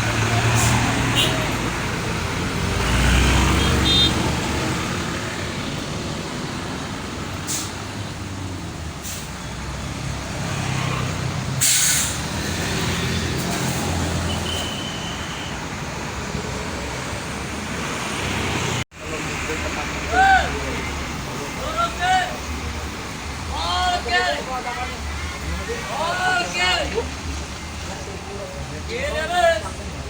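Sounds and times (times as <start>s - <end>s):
bus diesel engine running: 0.0s - 30.0s
air brake hisses: 7.4s - 7.8s, 9.0s - 9.4s, 11.6s - 12.3s.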